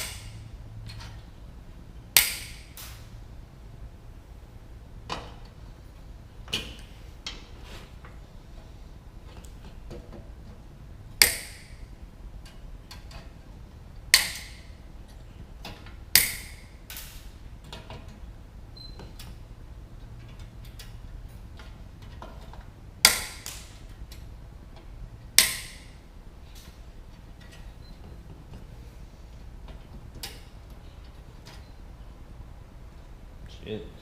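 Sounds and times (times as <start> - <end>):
wire cutters snapping wire: 0.0 - 1.2, 2.1 - 3.1, 11.2 - 13.3, 14.0 - 14.8, 15.6 - 17.9, 20.4 - 24.3, 25.3 - 26.0.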